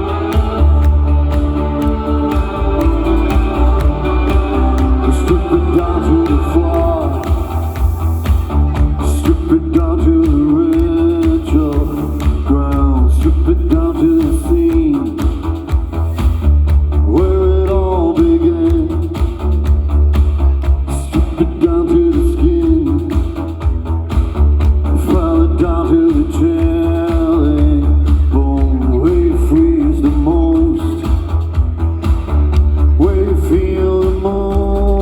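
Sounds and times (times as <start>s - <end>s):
person singing wordless notes: 0.0s - 15.2s
band playing: 0.0s - 35.0s.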